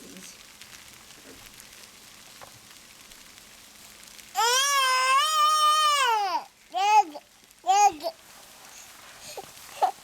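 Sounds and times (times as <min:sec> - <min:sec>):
rain and hail falling: 0:00.0 - 0:10.0
toddler wailing: 0:04.4 - 0:08.1.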